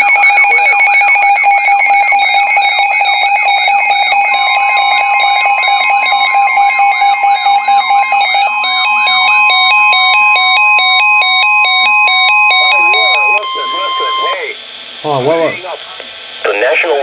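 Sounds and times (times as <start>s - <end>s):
high beeps stepping in pitch: 0.0s - 14.5s
steady alert tone: 0.0s - 14.5s
warbling siren: 0.0s - 14.5s
steady beeping tone: 0.0s - 14.6s.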